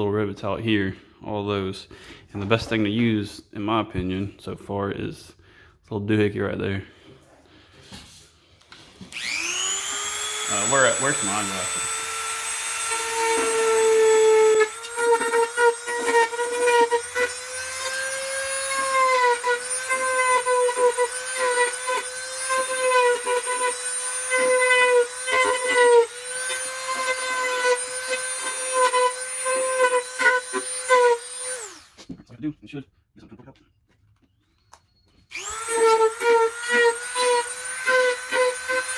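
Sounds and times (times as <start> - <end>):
rotary tool whining: 8.9 - 32.0, 35.2 - 38.9.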